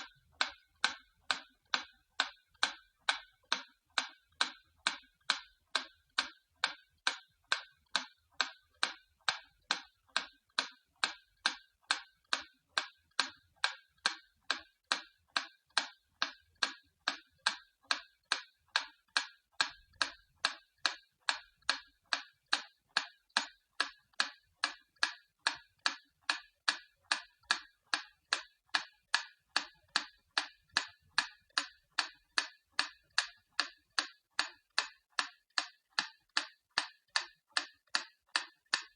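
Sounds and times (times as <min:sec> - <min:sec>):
clock ticking: 0:00.0 - 0:38.9.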